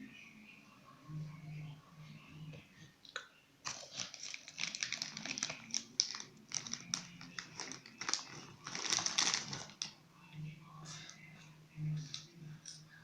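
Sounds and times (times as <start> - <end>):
chips being chewed: 3.7 - 9.9.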